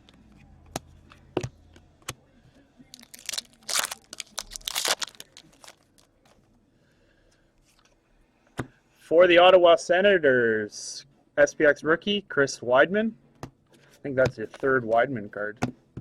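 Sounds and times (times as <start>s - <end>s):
wrapper tearing and crinkling: 2.9s - 6.1s.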